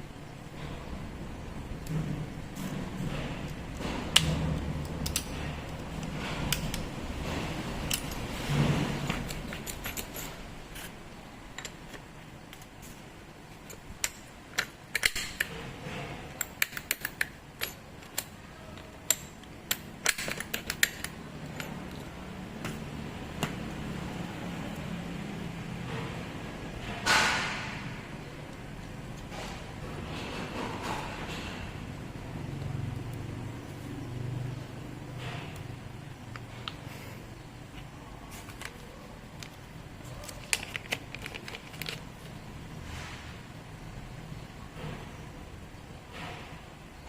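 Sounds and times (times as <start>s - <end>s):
hand tools clicking and tapping: 1.8s - 8.3s, 9.0s - 12.7s, 13.5s - 23.8s.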